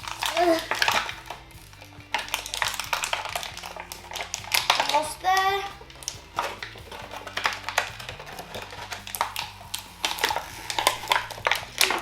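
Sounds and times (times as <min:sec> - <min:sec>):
hands opening plastic packaging: 0:00.0 - 0:12.0.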